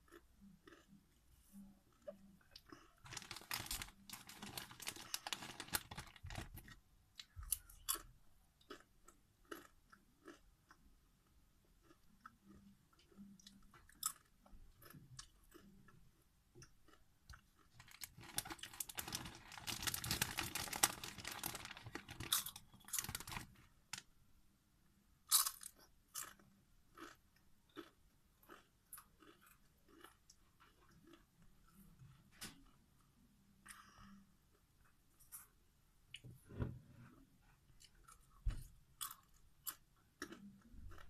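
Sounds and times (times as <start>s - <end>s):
chewing crunchy chips: 0.0s - 1.0s, 1.9s - 16.0s, 16.6s - 24.0s, 25.3s - 32.2s, 39.0s - 41.0s.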